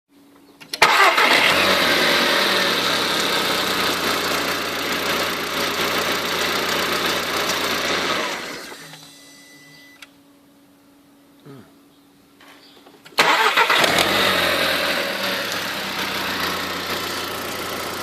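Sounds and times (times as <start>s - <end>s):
car engine starting and idling: 0.7s - 9.1s, 13.2s - 18.0s
loud unusual engine noise: 0.8s - 8.7s, 13.2s - 18.0s.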